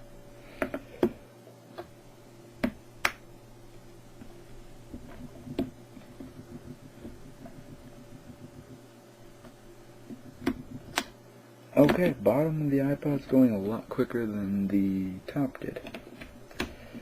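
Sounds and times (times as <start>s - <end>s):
low hum: 0.0s - 15.3s.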